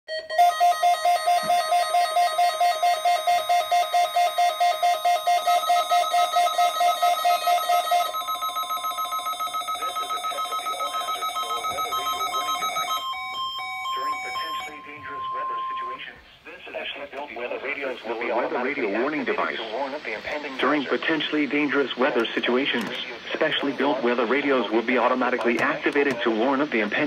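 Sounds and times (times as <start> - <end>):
electronic alarm tone: 0.1 - 16.0
rapid pulsed electronic beeping: 2.0 - 16.0.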